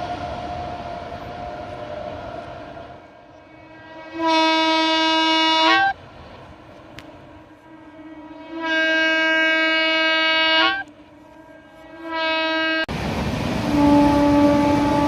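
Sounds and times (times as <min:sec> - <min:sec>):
locomotive horn blasts: 0:03.4 - 0:06.0, 0:07.4 - 0:12.9, 0:13.7 - 0:15.0.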